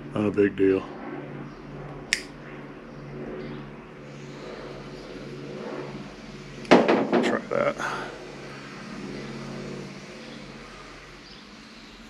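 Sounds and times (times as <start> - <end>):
sharp cutter click: 2.1 - 2.3.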